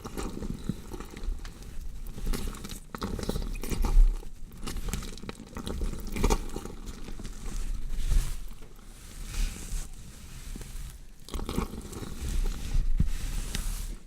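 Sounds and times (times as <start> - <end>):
wet crunching and tearing: 0.0 - 8.8.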